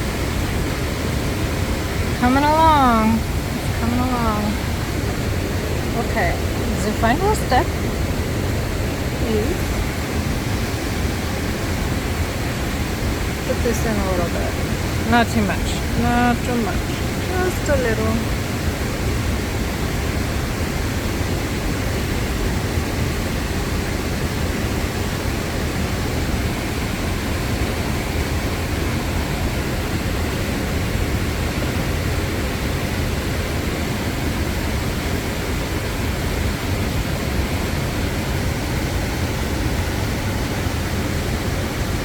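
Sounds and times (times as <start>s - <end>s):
river and waterfall rushing: 0.0s - 42.0s.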